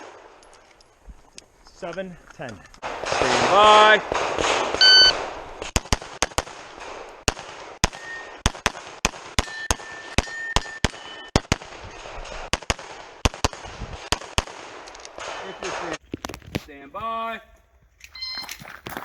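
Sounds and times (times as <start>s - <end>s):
pistol shots: 2.8s - 16.0s
shot timer beep: 4.8s - 5.1s, 18.2s - 18.6s.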